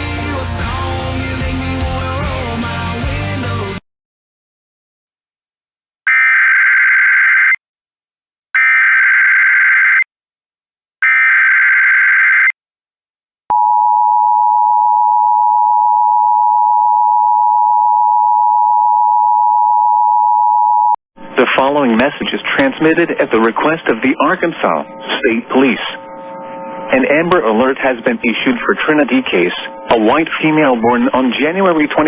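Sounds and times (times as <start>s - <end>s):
long steady attention tone: 13.5s - 21.0s, 22.2s - 32.0s.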